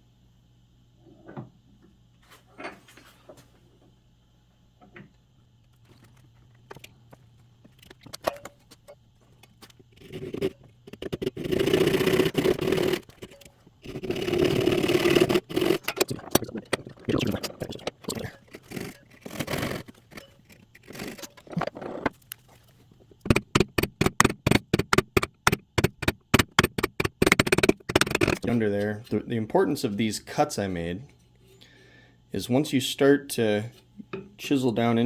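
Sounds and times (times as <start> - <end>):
hand saw cutting wood: 10.0 - 16.2, 16.8 - 22.0.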